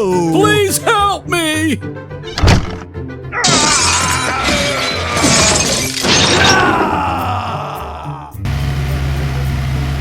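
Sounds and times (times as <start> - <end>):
background music: 0.0 - 10.0
thump: 2.4 - 2.8
glass shattering: 3.4 - 6.9.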